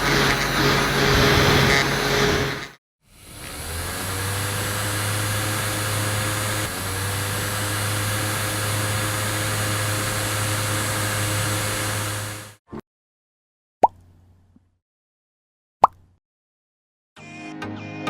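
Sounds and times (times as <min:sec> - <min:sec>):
small fan motor humming: 0:00.0 - 0:12.6.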